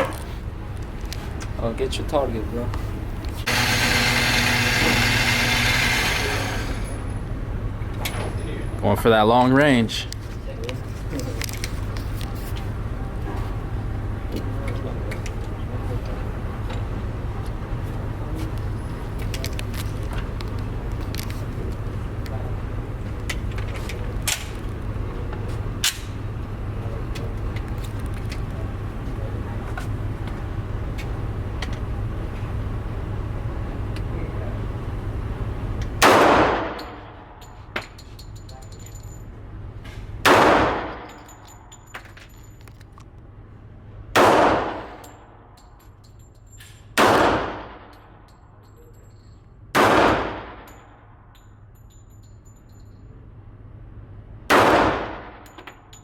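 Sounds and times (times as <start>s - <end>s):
steady low hum: 0.0s - 56.0s
pistol shots: 36.0s - 36.9s, 40.2s - 41.0s, 44.2s - 45.0s, 47.0s - 47.9s, 49.7s - 50.7s, 54.5s - 55.4s.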